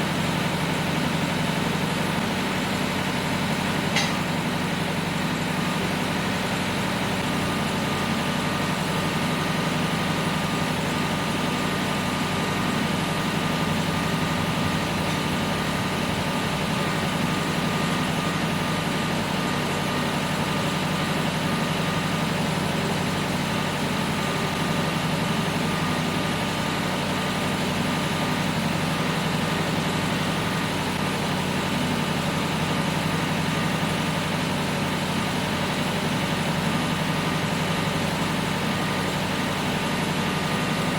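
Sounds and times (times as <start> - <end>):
tractor engine running: 0.0 - 40.9.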